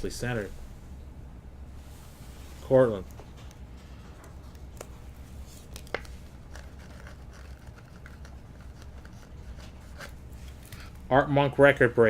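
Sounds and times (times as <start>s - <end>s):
low steady hum: 0.0s - 12.0s
trading cards rustling: 2.8s - 10.9s.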